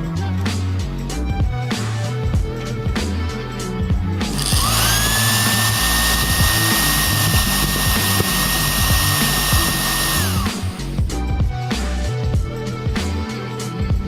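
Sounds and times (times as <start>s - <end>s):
hair dryer whine: 4.3s - 11.0s.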